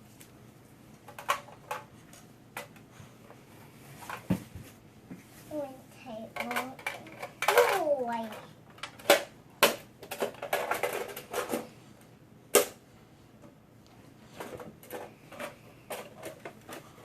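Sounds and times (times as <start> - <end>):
objects knocking and clicking: 6.3 - 11.8.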